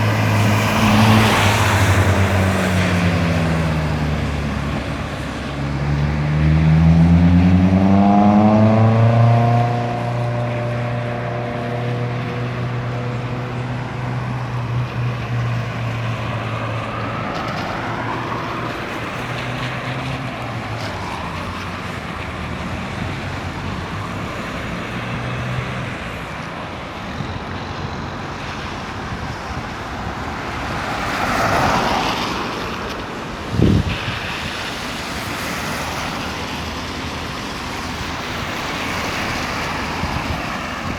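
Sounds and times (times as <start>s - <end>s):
vehicle engine accelerating: 0.0s - 26.2s
vehicle passing: 0.0s - 26.3s, 28.1s - 40.9s
traffic noise: 0.0s - 40.9s.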